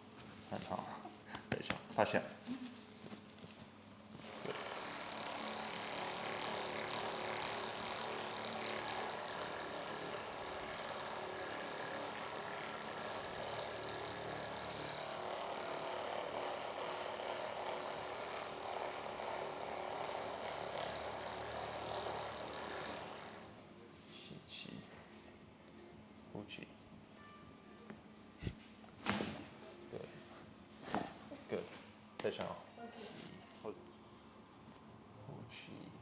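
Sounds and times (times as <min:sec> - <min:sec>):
small electric motor whirring: 0:04.2 - 0:23.6.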